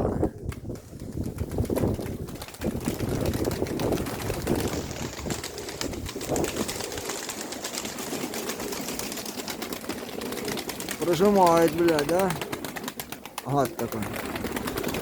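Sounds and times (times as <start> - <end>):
strong wind rushing: 0.0 - 7.0
pigeons cooing: 1.8 - 15.0.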